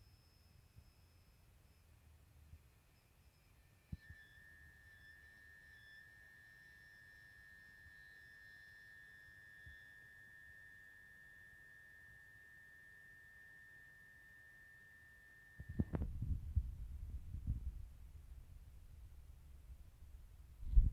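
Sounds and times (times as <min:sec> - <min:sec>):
heater high-pitched whine: 0:02.6 - 0:19.7
low knocks and rumbling: 0:15.8 - 0:20.9.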